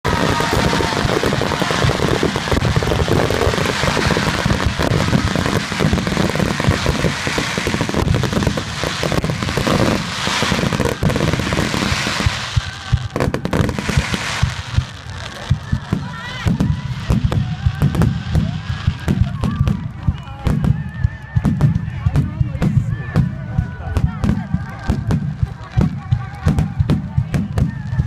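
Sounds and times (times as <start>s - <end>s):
fireworks bangs and crackling: 0.0s - 28.0s
fireworks booms: 0.0s - 28.0s.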